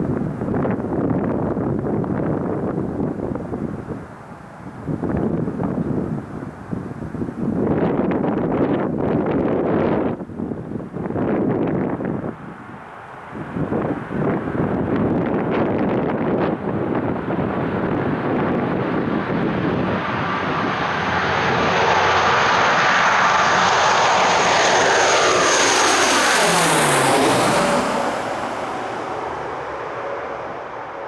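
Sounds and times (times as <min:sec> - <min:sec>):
turboprop aircraft passing: 0:09.9 - 0:31.0.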